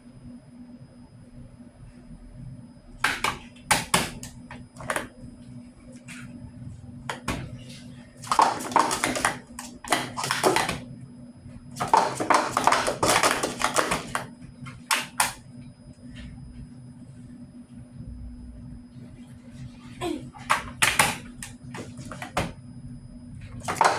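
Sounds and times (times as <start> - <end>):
low hum: 15.4 - 20.5.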